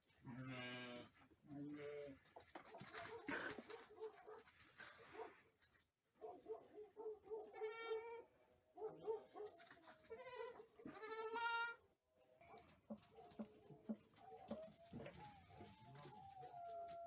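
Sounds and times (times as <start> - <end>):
sheep bleating: 0.3 - 1.1, 10.1 - 11.8.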